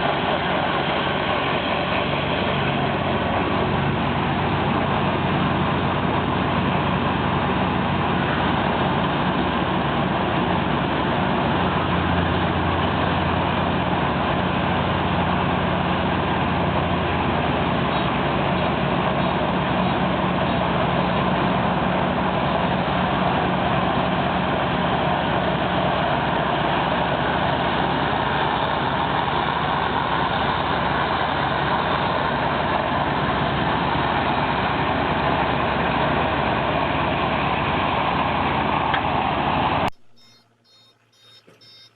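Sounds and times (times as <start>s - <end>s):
machine engine running: 0.0s - 41.9s.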